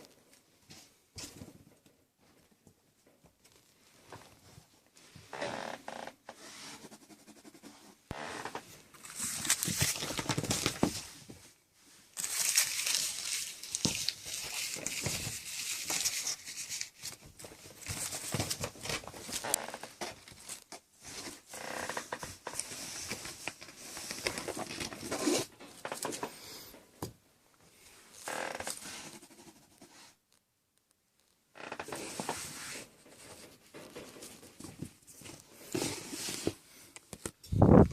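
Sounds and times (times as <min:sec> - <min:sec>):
kittens scuffling and scratching: 0:08.7 - 0:26.6.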